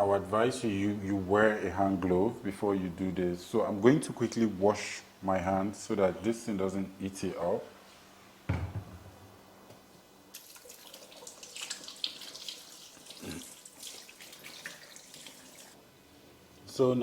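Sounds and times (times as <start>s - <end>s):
knock: 8.5s - 9.1s
hands washing with splashing: 10.4s - 15.8s
tap water running into sink: 10.4s - 15.8s.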